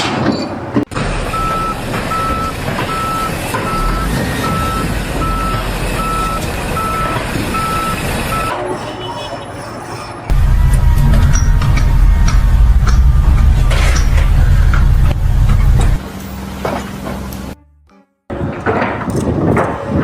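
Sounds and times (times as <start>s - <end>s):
engine and site noise: 0.0s - 9.5s, 10.1s - 17.6s
reversing alarm beeping: 1.3s - 16.4s
loud low rumble: 10.3s - 17.6s.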